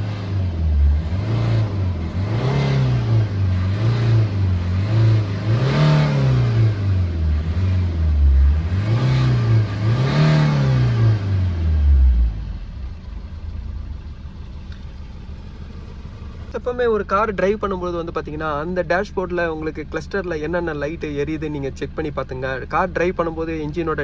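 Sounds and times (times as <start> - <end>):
car engine revving: 0.0 - 16.6
car engine idling: 0.0 - 24.0.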